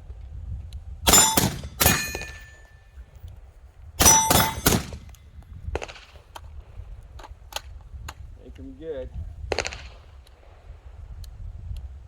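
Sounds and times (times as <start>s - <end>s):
pistol shots: 1.1s - 2.7s, 4.0s - 5.1s
brief metallic ring: 1.1s - 2.8s, 4.0s - 5.0s.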